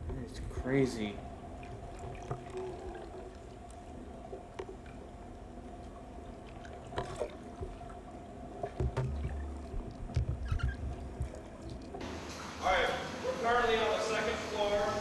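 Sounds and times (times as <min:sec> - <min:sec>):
water pouring and dripping: 0:01.2 - 0:15.0
low rumbling thumps: 0:08.6 - 0:12.0.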